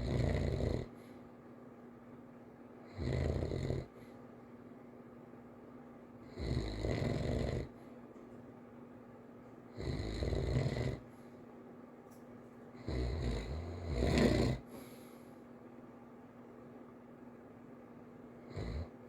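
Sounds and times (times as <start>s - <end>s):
child snoring lightly: 0.0s - 0.9s, 12.8s - 14.8s.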